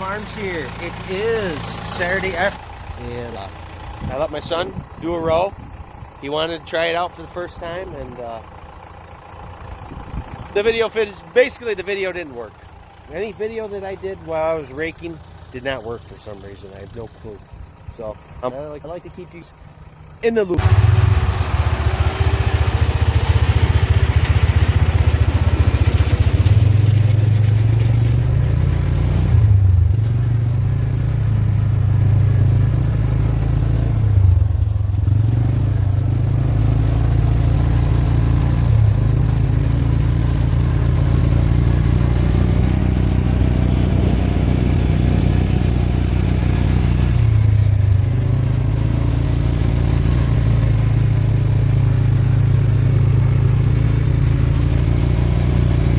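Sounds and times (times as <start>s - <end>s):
tractor diesel engine running: 0.0s - 55.9s
baler clatter: 23.9s - 30.4s.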